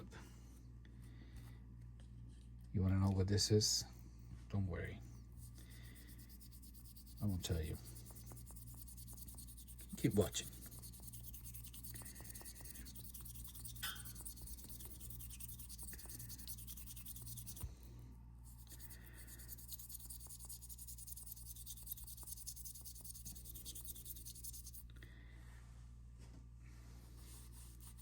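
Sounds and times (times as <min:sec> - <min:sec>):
steady low hum: 0:00.0 - 0:28.0
faint rubbing and scratching: 0:05.0 - 0:24.9, 0:26.7 - 0:28.0.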